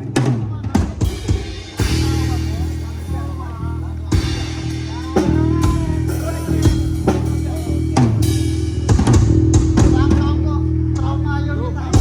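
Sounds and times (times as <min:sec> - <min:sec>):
bass guitar low notes: 0:00.0 - 0:12.0
drum kit hits: 0:00.1 - 0:10.4.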